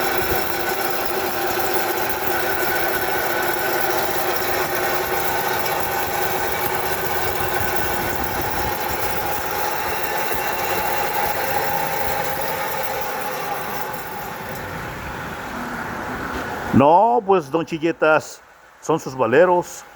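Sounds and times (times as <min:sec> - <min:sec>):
wheel bearing droning: 0:00.0 - 0:15.5.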